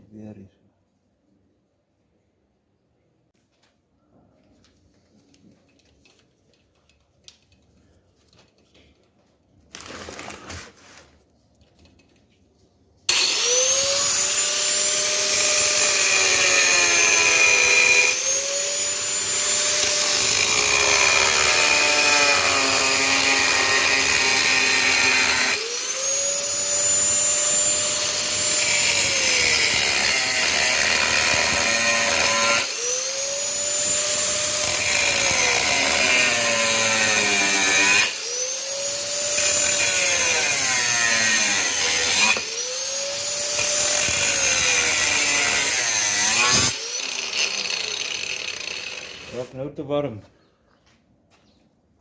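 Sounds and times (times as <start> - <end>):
power tool cutting metal: 13.1 - 49.5.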